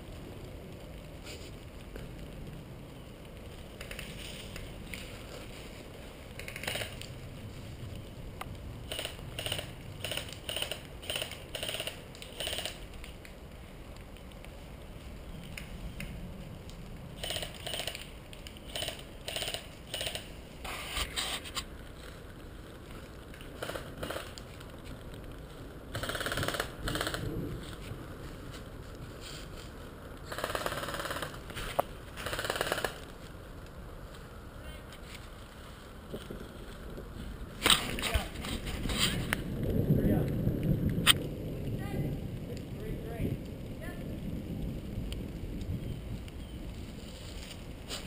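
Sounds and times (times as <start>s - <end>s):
footsteps crunching through dry leaves: 27.6s - 29.9s, 46.7s - 48.0s.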